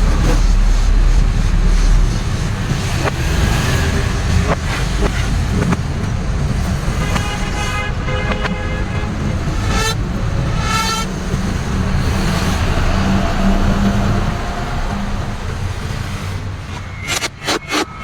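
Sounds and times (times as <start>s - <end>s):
vehicle engine running: 0.0s - 17.0s
road traffic noise: 0.0s - 18.0s
car horns: 6.5s - 18.0s.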